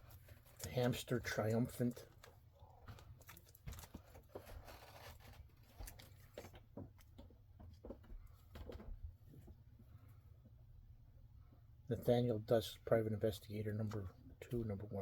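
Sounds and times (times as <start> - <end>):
comic books rustling: 0.0 - 7.0.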